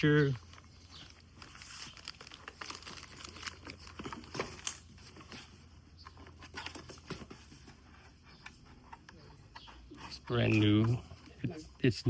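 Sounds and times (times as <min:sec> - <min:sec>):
packaging rustling and crinkling: 0:00.0 - 0:08.4.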